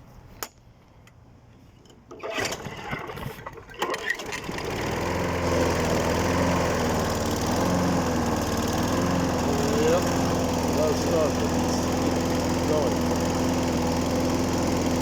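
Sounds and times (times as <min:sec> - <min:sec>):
mower engine running: 0:03.8 - 0:15.0.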